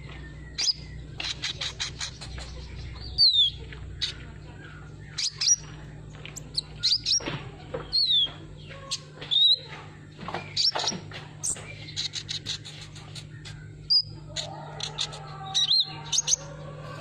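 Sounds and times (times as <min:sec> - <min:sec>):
steady low hum: 0:00.0 - 0:17.0
bird chirps and whistles: 0:00.4 - 0:02.3, 0:06.5 - 0:07.2, 0:10.4 - 0:14.1.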